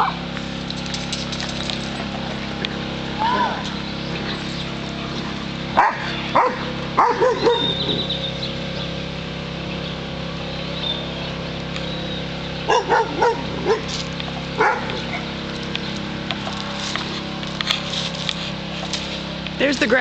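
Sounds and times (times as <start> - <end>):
dog barking: 5.8 - 7.8, 12.7 - 13.9, 14.6 - 15.0.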